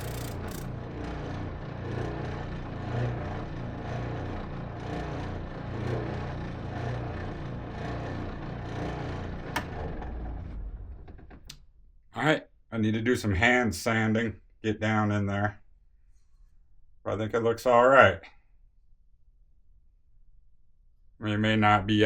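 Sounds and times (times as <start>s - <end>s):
sharp click: 0.0s - 0.7s
bench sander sanding wood: 0.0s - 9.8s.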